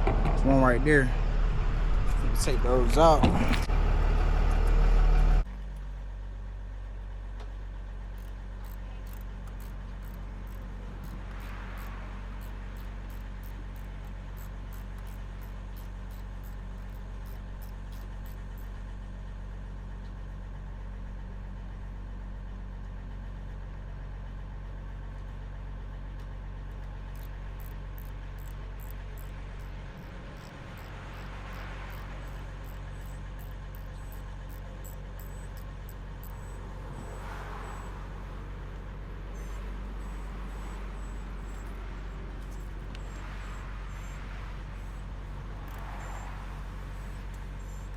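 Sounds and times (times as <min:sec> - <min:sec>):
engine idling hum: 0:00.0 - 0:47.9
faint rapid ticking: 0:08.0 - 0:19.0, 0:26.7 - 0:47.9.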